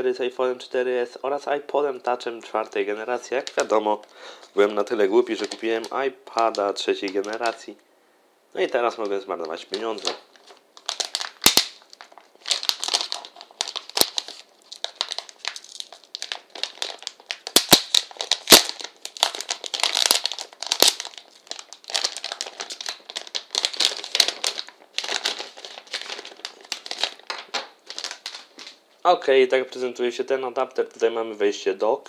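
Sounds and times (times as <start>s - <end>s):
plastic packaging crinkling: 2.6s - 7.7s, 8.8s - 28.9s.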